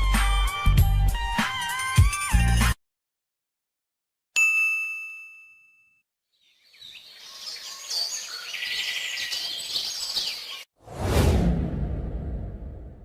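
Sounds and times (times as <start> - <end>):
bell ding: 4.4 - 6.0
birds chirping: 6.3 - 10.7.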